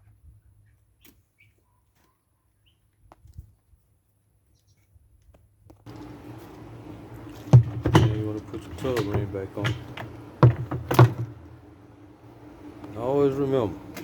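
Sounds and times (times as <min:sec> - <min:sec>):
low hum with hiss: 0:05.9 - 0:14.0
louder knock: 0:07.5 - 0:11.5.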